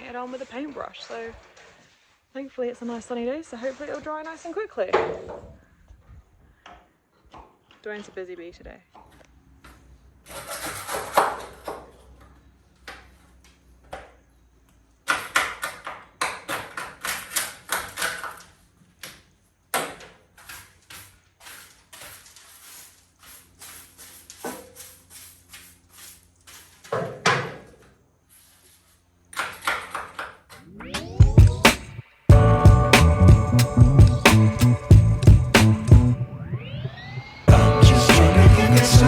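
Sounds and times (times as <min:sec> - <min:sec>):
brush scrubbing metal floor: 0:20.3 - 0:27.2.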